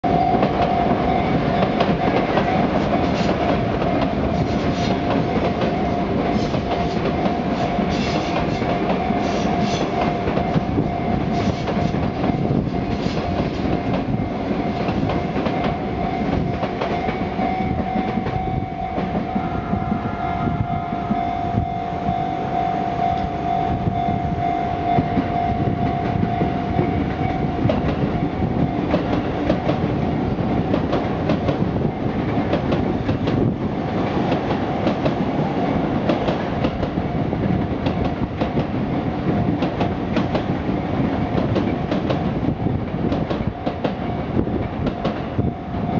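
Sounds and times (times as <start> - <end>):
steady high tone: 0.0 - 11.4, 12.2 - 30.2
train wheels clattering over rail joints: 36.0 - 45.5.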